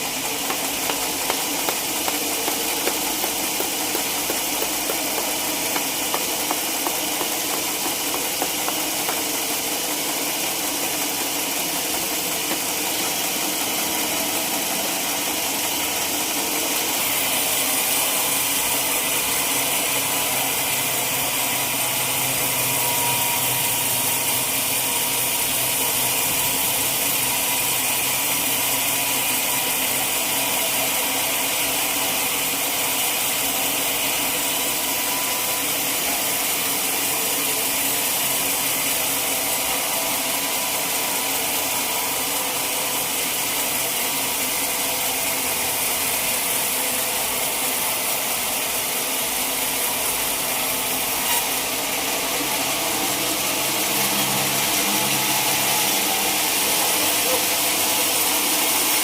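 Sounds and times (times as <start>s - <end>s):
sawmill saw cutting log: 0.0s - 59.0s
small knock: 0.5s - 9.3s.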